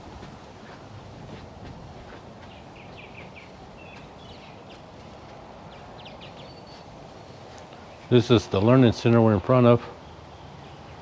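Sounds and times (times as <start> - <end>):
outdoor background noise: 0.0 - 11.0
small birds chirping: 2.1 - 8.4.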